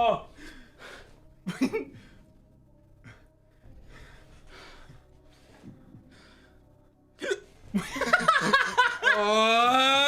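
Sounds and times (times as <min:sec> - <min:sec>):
soft breathing: 0:02.0 - 0:07.0.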